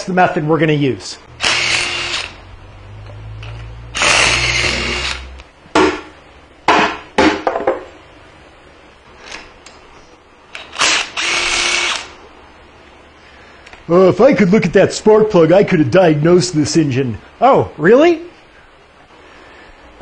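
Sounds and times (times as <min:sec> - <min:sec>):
handheld power tool running: 0:01.3 - 0:02.4, 0:03.9 - 0:05.4, 0:10.5 - 0:12.1.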